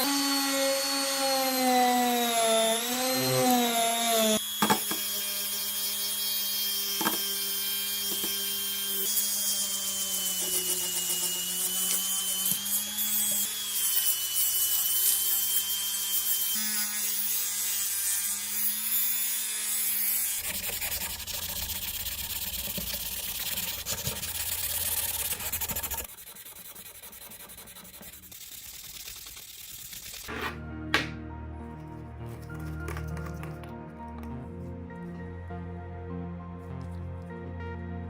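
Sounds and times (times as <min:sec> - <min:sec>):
power tool motor whining: 0:00.0 - 0:18.0
coarse sanding noise: 0:09.5 - 0:15.6, 0:20.4 - 0:30.6.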